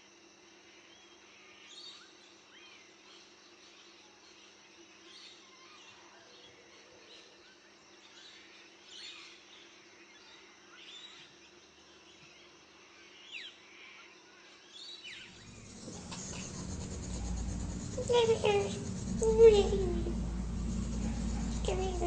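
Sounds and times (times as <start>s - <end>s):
rumble of noise: 15.3s - 22.0s
faint bird chirps: 15.4s - 22.0s
low steady hum: 15.4s - 22.0s.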